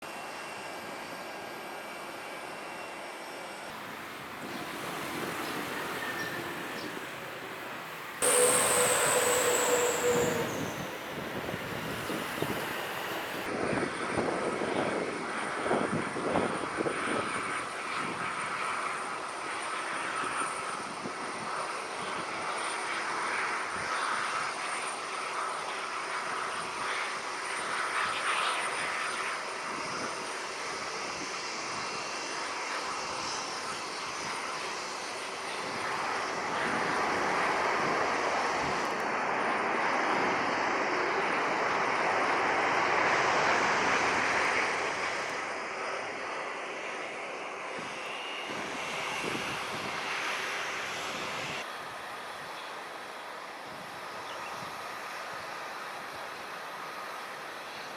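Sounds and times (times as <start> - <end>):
jet airliner engines: 0.0 - 57.9
high whine falling in pitch: 3.8 - 13.5.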